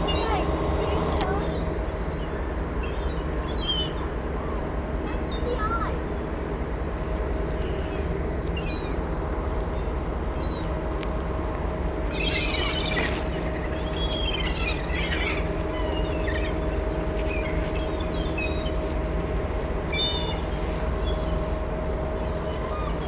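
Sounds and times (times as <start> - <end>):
low machine hum: 0.0 - 23.0
gulls calling: 7.5 - 23.0.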